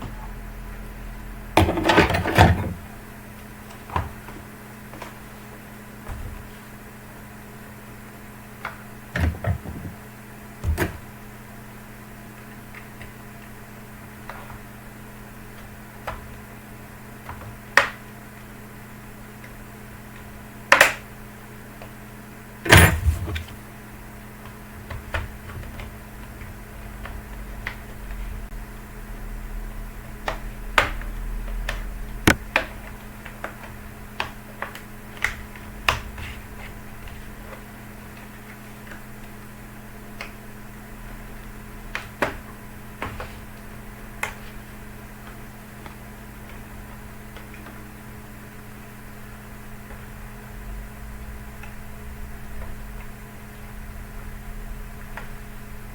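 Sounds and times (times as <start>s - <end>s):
steady low hum: 0.0s - 55.9s.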